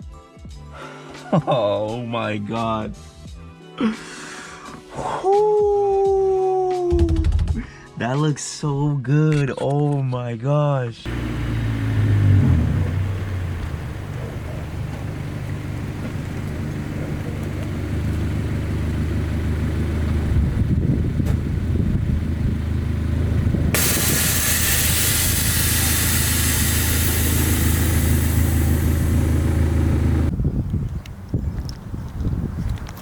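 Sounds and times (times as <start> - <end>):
loud hiss: 11.1 - 15.0, 23.7 - 29.9
car engine humming: 11.1 - 30.3.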